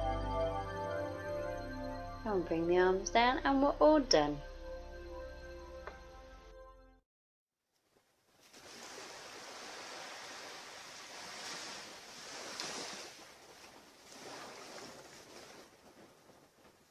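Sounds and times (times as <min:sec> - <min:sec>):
ocean waves breaking on beach: 0:08.4 - 0:16.6.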